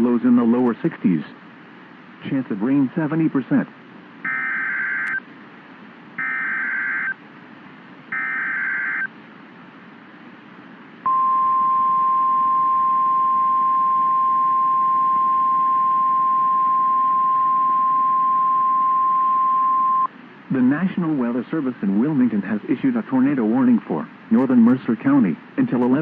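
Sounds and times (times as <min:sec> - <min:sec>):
harsh data bursts: 0:04.3 - 0:05.2, 0:06.2 - 0:07.2, 0:08.1 - 0:09.1
steady warning alarm tone: 0:04.3 - 0:05.2, 0:06.2 - 0:07.2, 0:08.1 - 0:09.1.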